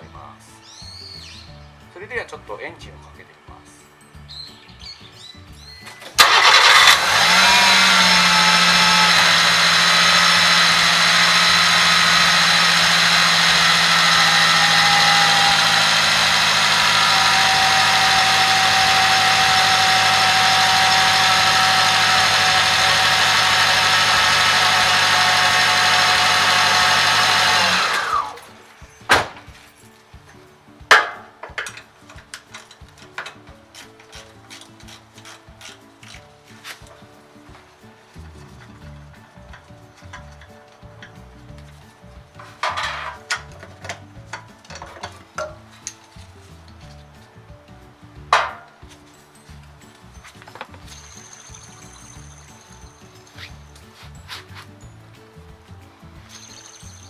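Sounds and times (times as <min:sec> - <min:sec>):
car engine starting and idling: 0:06.1 - 0:28.5
high whine of belt pulley: 0:06.2 - 0:28.6.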